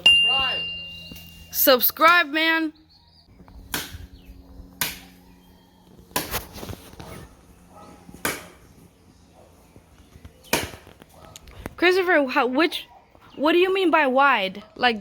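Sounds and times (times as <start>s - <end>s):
blade chopping into tree trunk: 3.7s - 4.1s, 4.8s - 5.1s, 6.1s - 6.7s, 8.2s - 8.6s, 10.4s - 11.0s.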